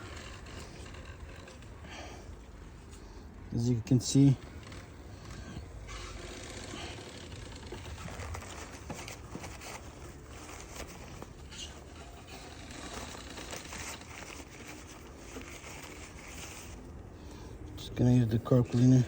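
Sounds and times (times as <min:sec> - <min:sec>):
faint rustling: 0:04.2 - 0:19.0.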